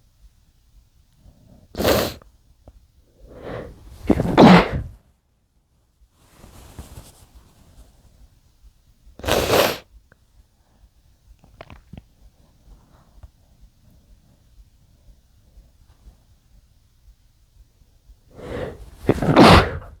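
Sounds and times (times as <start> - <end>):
muffled sneezes: 1.8 - 2.2, 3.4 - 5.0, 9.2 - 9.9, 18.4 - 20.0
faint breathing: 3.2 - 5.0, 18.3 - 20.0.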